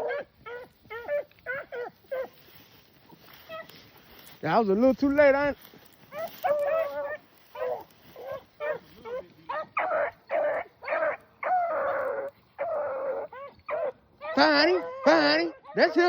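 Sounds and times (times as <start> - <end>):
dogs baying and barking: 0.0 - 4.4, 5.2 - 16.0.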